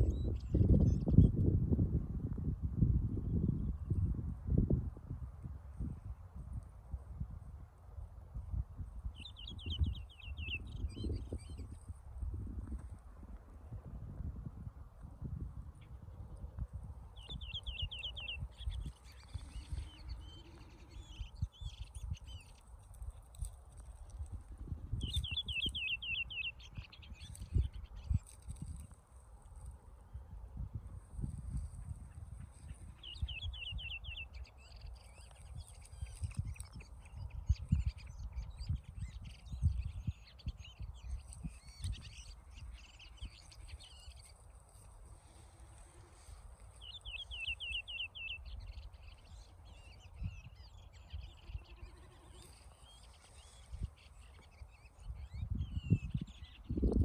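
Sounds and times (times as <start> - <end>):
small bird singing: 0.0 - 1.4, 9.0 - 12.8, 15.3 - 29.0, 30.6 - 57.0.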